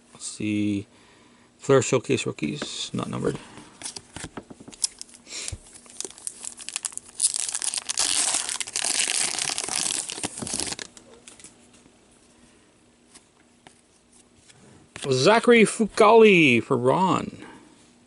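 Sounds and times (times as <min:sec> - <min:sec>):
foil wrapper tearing and crinkling: 0:04.8 - 0:11.0.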